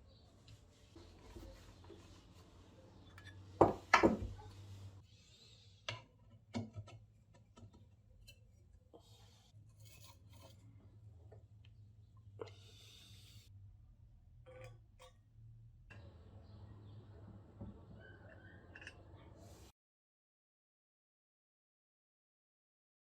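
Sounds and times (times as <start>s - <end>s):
light scrapes: 9.0s - 10.7s.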